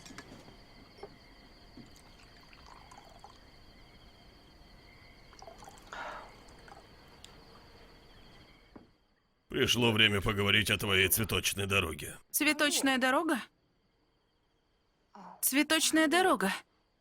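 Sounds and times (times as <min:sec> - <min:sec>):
liquid pouring: 0:01.8 - 0:03.6, 0:05.3 - 0:06.9.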